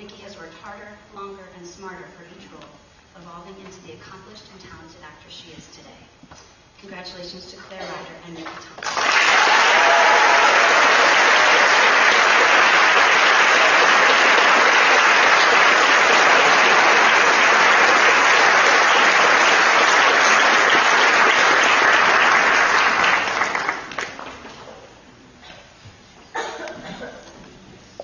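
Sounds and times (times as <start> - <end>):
audience applauding: 8.8 - 24.5.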